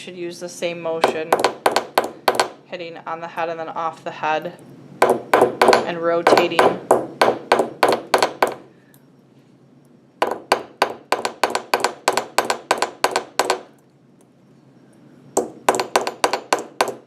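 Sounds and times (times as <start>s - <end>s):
hammer tapping on metal: 5.0s - 8.6s, 10.2s - 13.7s, 15.4s - 17.0s.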